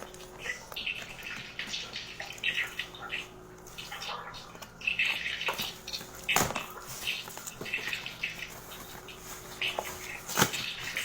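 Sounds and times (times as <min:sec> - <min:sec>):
packaging rustling and crinkling: 0:05.6 - 0:11.0.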